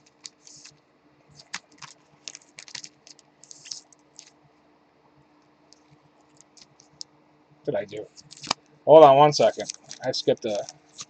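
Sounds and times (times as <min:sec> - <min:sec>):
trading cards being shuffled: 0:00.0 - 0:04.4, 0:05.8 - 0:07.0, 0:08.0 - 0:08.6, 0:09.3 - 0:11.0.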